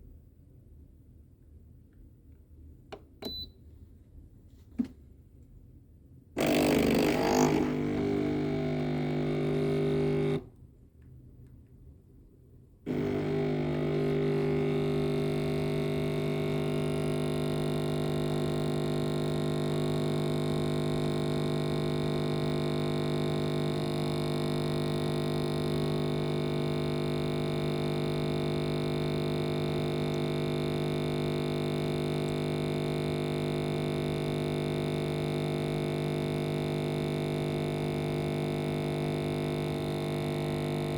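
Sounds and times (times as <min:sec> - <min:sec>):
coffee machine humming: 0:06.4 - 0:10.5, 0:12.9 - 0:40.9.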